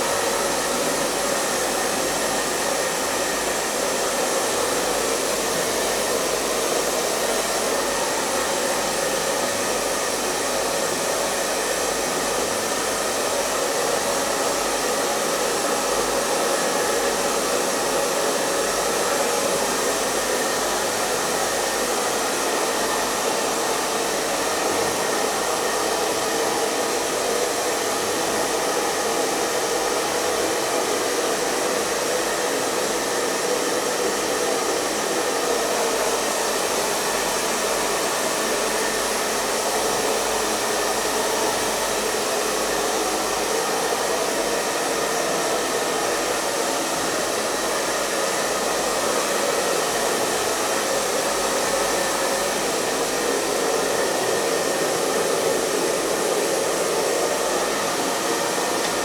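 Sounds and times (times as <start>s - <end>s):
hair dryer blowing: 0.0s - 59.0s.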